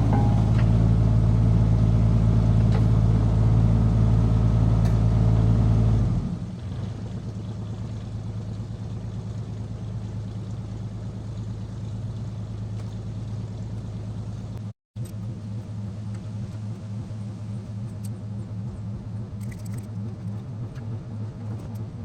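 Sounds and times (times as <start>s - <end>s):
diesel engine idling: 0.0s - 4.7s.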